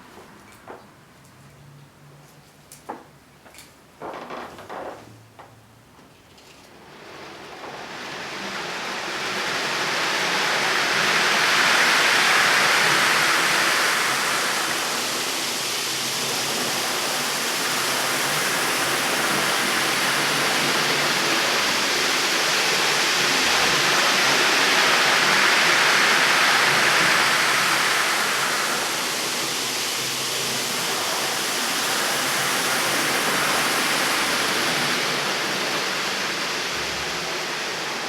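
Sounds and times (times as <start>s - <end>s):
steady rushing noise: 7.9s - 38.0s.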